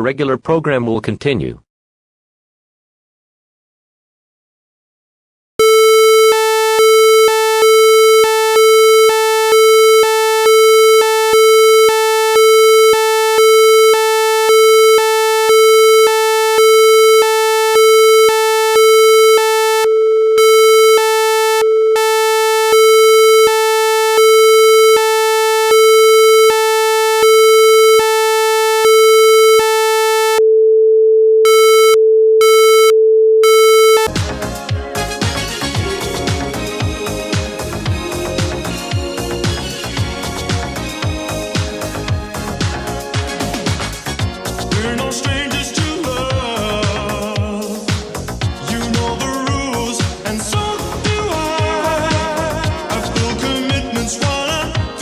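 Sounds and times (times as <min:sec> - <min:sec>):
high beeping tone: 0:05.6 - 0:30.4, 0:31.5 - 0:34.1
steady buzzy electronic tone: 0:05.6 - 0:30.4.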